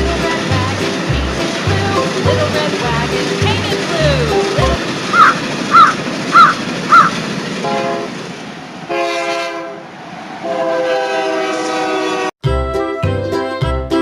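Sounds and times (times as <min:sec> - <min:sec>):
cartoon train horn blasts: 0:04.7 - 0:08.2, 0:08.9 - 0:09.8, 0:10.4 - 0:12.3.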